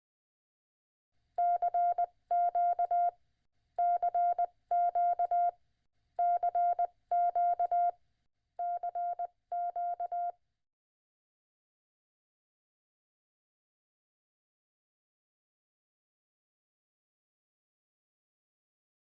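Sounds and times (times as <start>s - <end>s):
morse code beeps: 1.4s - 3.1s, 3.8s - 5.5s, 6.2s - 7.9s, 8.6s - 10.3s.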